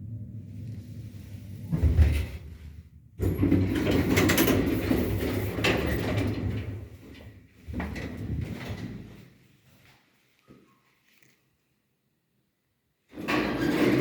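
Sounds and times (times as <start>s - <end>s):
low motor hum: 0.0s - 2.9s
elevator doors sliding: 13.2s - 14.0s.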